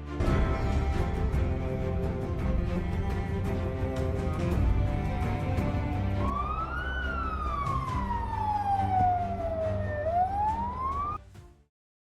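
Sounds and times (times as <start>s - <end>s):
background music: 0.0s - 11.7s
siren wailing: 6.1s - 11.2s.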